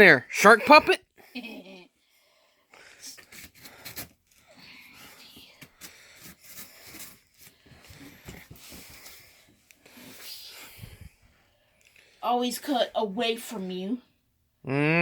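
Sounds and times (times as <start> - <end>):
knife cutting cardboard: 3.2 - 4.2, 5.6 - 8.5
cardboard box scraping and rustling: 6.0 - 8.6.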